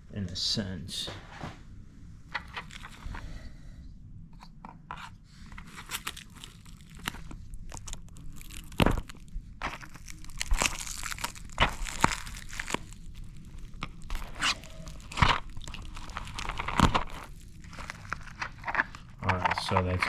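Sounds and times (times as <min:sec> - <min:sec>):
packaging crinkling and tearing: 0:02.3 - 0:03.4, 0:05.5 - 0:20.0.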